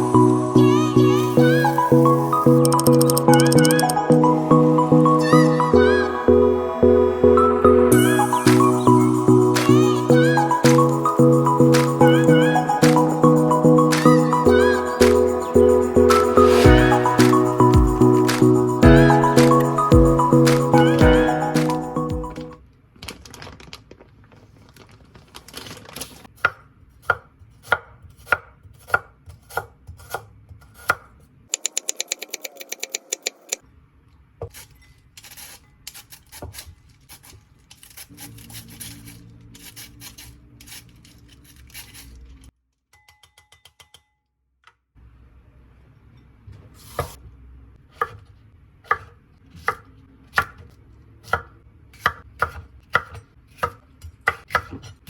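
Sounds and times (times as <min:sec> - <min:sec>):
knife chopping on cutting board: 0:26.4 - 0:32.4, 0:47.9 - 0:50.7, 0:51.3 - 0:55.0.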